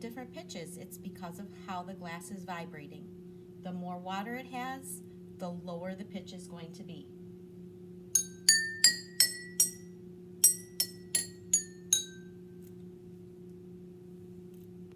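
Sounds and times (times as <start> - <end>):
water glasses ringing clinks: 8.2 - 9.8, 10.4 - 12.2.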